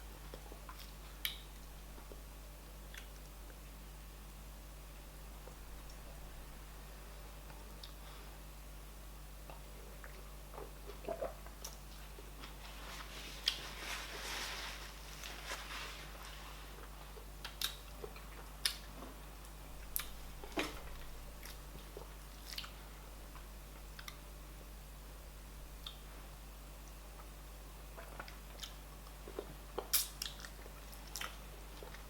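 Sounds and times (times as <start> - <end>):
person chewing food: 0.3 - 3.7, 9.4 - 12.6, 13.4 - 13.7, 16.7 - 24.3, 25.7 - 26.1, 26.8 - 32.0
wet mouth clicks and smacks: 17.4 - 17.9, 29.8 - 31.4.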